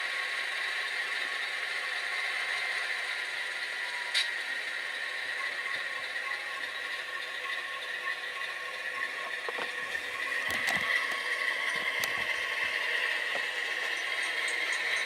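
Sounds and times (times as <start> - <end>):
diesel engine idling through speakers: 0.0 - 15.0.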